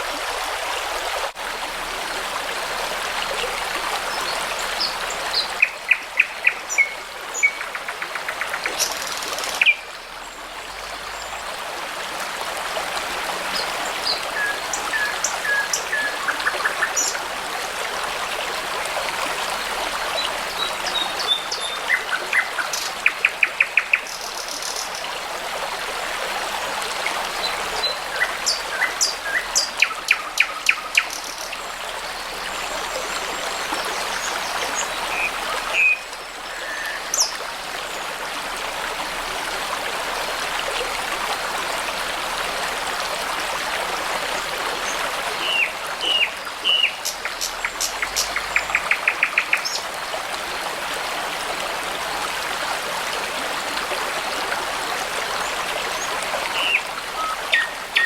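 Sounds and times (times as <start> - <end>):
babbling brook: 0.0 - 58.0
songbirds singing: 44.8 - 49.9, 55.4 - 58.0.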